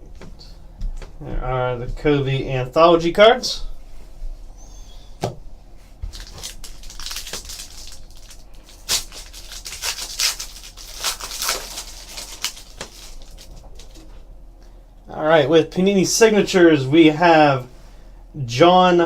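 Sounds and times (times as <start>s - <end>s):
foil wrapper crinkling: 6.0s - 14.2s.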